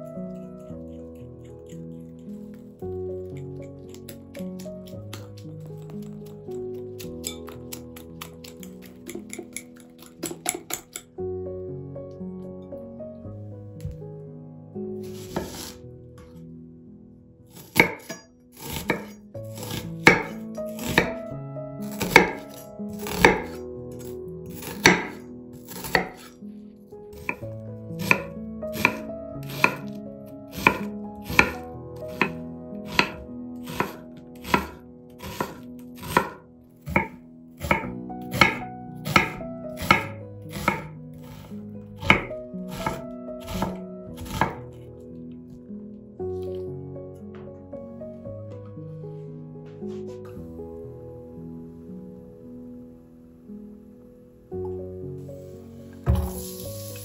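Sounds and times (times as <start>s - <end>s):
knife chopping on cutting board: 15.2s - 15.8s, 17.6s - 21.2s, 21.8s - 23.6s, 24.5s - 26.3s, 27.2s - 27.4s, 28.0s - 44.6s.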